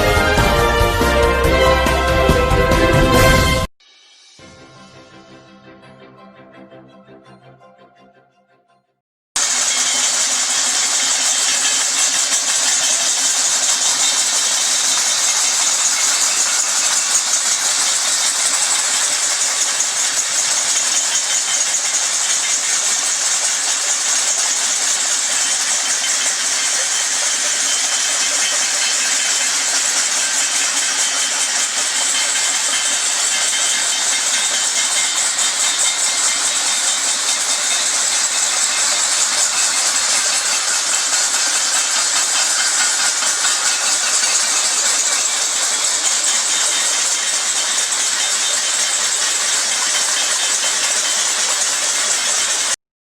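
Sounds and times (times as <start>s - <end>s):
bells ringing: 0.0s - 3.7s, 9.4s - 52.3s
crowd clapping: 0.0s - 3.7s.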